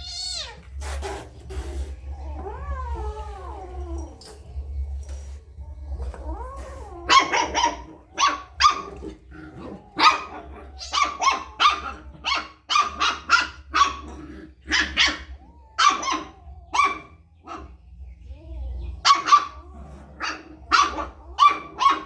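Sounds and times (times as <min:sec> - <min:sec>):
dog barking: 0:07.1 - 0:09.1, 0:09.9 - 0:17.8, 0:19.0 - 0:19.6, 0:20.2 - 0:22.0.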